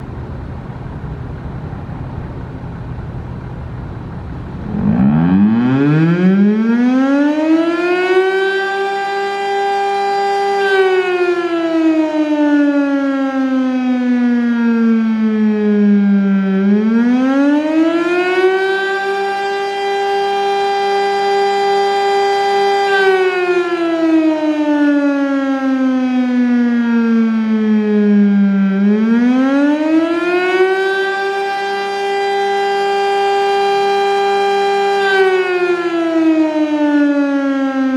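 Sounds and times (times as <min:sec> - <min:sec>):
low rumble: 0:00.0 - 0:05.2
siren wailing up and down: 0:04.6 - 0:37.9.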